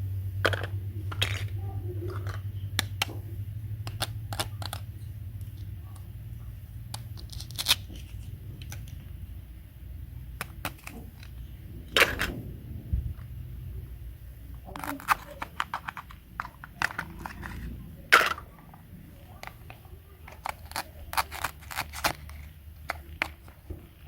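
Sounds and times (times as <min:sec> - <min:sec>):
low steady hum: 0:00.0 - 0:24.0
small hard objects clicking: 0:00.4 - 0:03.2, 0:03.8 - 0:06.1, 0:06.8 - 0:09.1, 0:10.4 - 0:12.4, 0:14.6 - 0:24.0.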